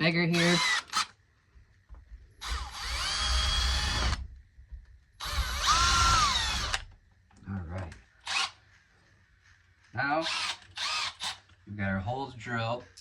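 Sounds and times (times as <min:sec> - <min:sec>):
power drill boring: 0:00.3 - 0:01.1, 0:02.4 - 0:04.2, 0:05.2 - 0:06.9, 0:08.2 - 0:08.6, 0:10.2 - 0:11.4.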